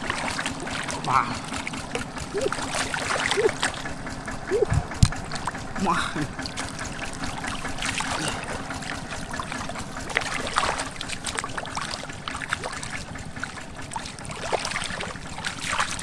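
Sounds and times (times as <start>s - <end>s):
swamp water sloshing and splashing: 0.0s - 16.0s.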